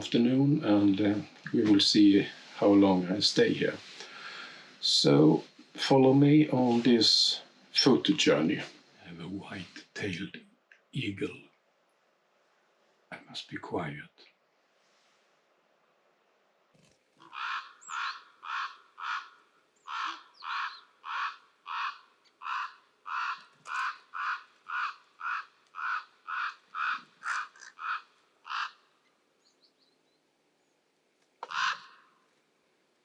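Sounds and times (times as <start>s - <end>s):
large bird calling: 17.2s - 30.0s, 31.4s - 32.2s.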